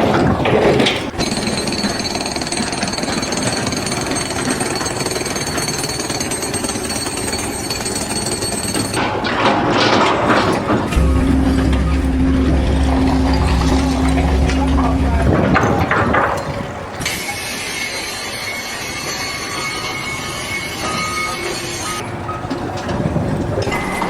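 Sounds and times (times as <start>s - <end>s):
jackhammer hammering: 0.0s - 17.8s
thin high whine: 10.9s - 16.4s.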